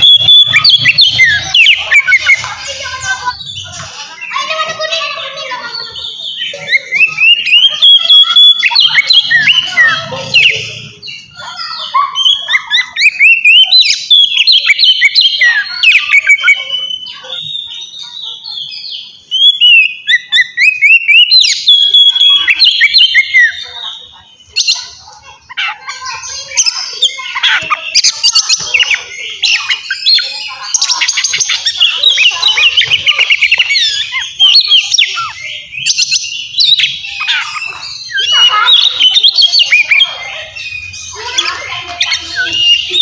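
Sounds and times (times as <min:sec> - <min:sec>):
bird singing whistles: 0:00.0 - 0:02.5, 0:06.2 - 0:10.6, 0:19.3 - 0:23.7.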